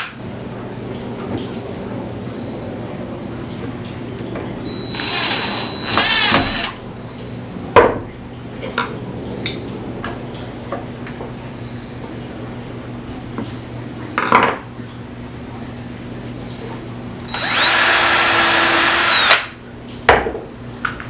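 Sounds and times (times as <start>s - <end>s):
cordless drill whirring: 4.7s - 6.8s, 17.3s - 19.5s.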